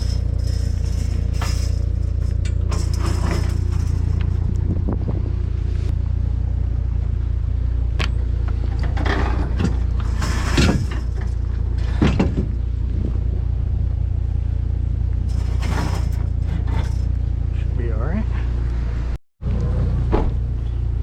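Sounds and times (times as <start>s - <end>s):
vehicle engine running: 0.0s - 21.0s
brief knocks and scrapes: 15.3s - 17.1s.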